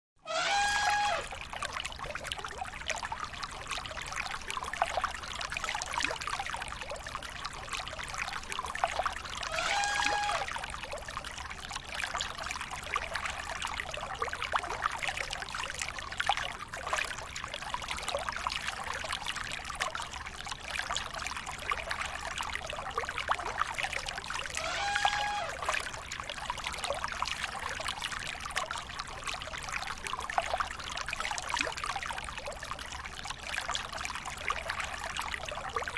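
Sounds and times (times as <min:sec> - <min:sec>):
short high-pitched calls: 0:00.2 - 0:01.3, 0:09.5 - 0:10.5, 0:24.6 - 0:25.6
river water splashing: 0:00.4 - 0:01.5, 0:09.4 - 0:10.6, 0:24.5 - 0:26.0.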